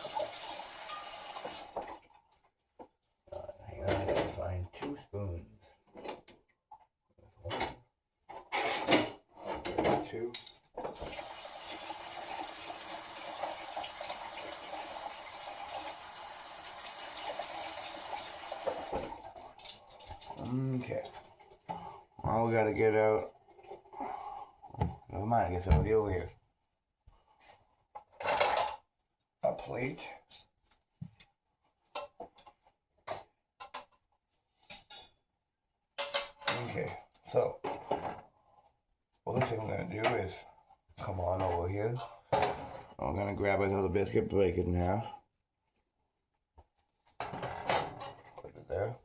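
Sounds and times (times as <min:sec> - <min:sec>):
faucet running into sink: 0:00.0 - 0:01.8, 0:10.9 - 0:19.3.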